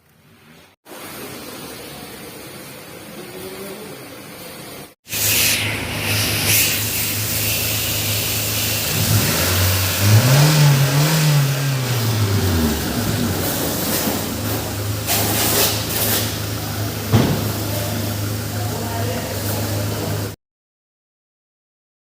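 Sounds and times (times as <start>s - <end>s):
car engine running: 5.9s - 20.4s.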